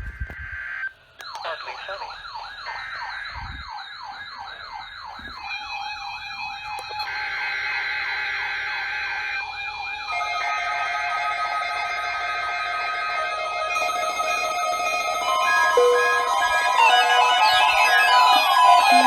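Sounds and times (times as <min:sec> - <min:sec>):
siren-like wailing alarm: 0:00.0 - 0:19.0
steady alarm tones: 0:00.4 - 0:19.0.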